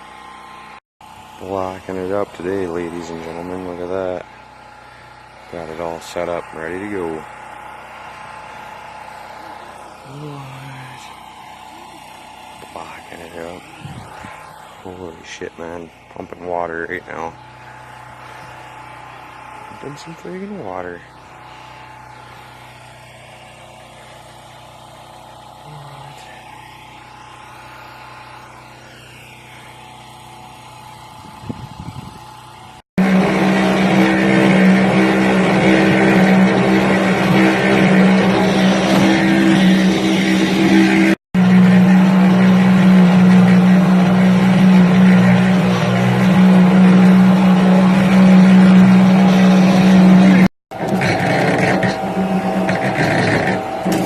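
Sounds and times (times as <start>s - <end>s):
engine running: 0.0s - 54.0s.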